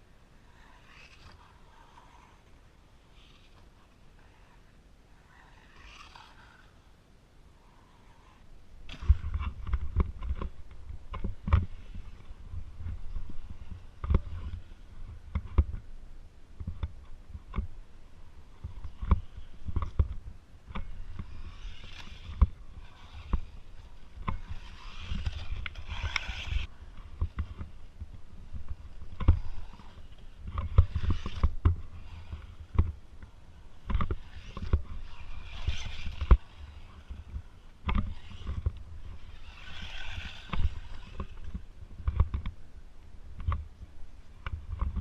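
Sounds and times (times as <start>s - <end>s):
tyres scraping on dirt: 0.0s - 6.9s, 16.8s - 42.6s
rc truck knocking and thumping: 8.2s - 15.9s, 16.6s - 42.6s.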